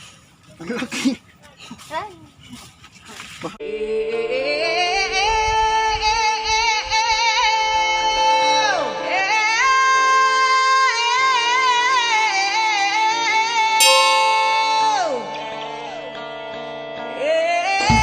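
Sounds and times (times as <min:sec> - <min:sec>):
sung melody with vibrato: 0:13.8 - 0:16.0.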